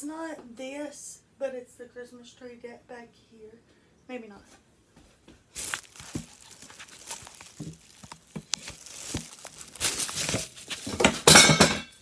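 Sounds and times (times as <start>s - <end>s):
packing peanuts rustling: 5.5s - 11.3s.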